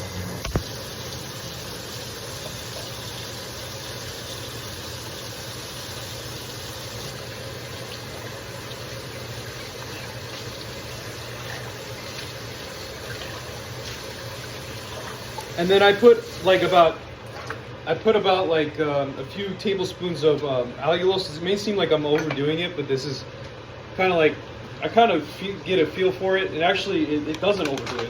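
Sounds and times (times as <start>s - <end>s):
kitchen tap running: 0.0s - 17.8s.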